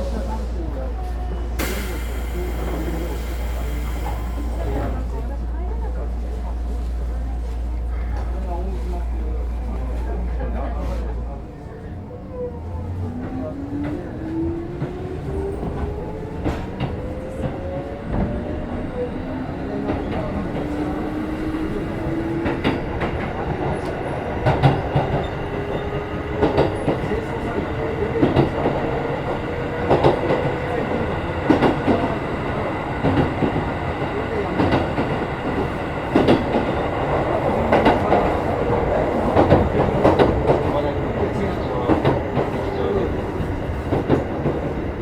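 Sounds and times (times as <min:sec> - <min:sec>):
train motor and gear whine: 0:01.4 - 0:05.5.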